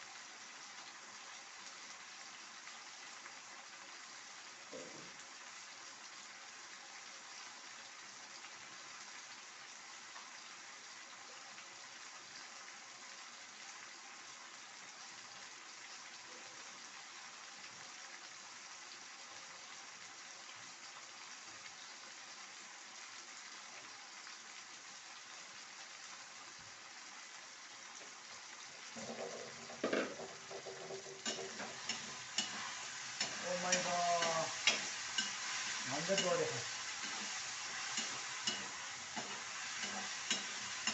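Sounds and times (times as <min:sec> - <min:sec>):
pot boiling: 0:26.8 - 0:40.9
metal utensil knocking on pot: 0:29.0 - 0:32.6.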